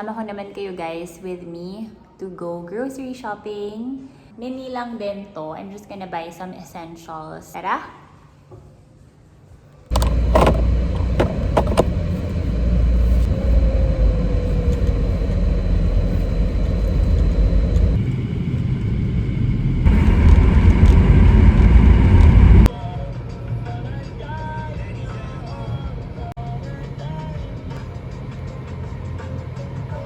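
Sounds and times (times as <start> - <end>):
car engine rumble: 9.9 - 22.7, 24.8 - 30.0
road noise: 9.9 - 22.7, 23.3 - 30.0.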